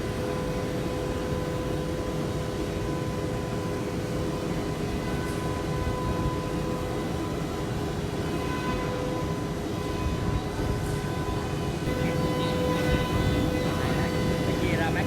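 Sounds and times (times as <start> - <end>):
woodworking machine whining: 4.7 - 15.0.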